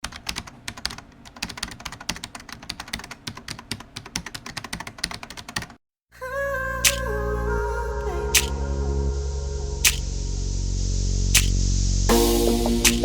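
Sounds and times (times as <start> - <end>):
keyboard typing clicks: 0.0 - 5.8
music with sustained notes: 7.0 - 13.0
sharp musical hit: 8.4 - 13.0.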